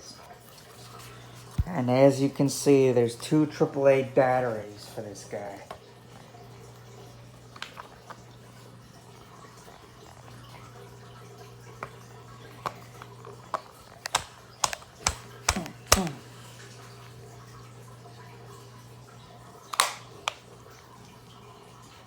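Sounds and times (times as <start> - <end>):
plastic clicks and taps: 12.6 - 16.2, 19.7 - 20.4.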